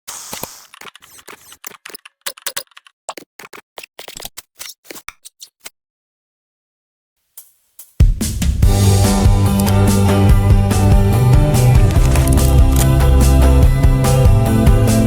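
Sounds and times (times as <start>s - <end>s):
rapid sharp clicks: 0.1s - 4.4s, 9.5s - 10.1s, 11.5s - 13.0s.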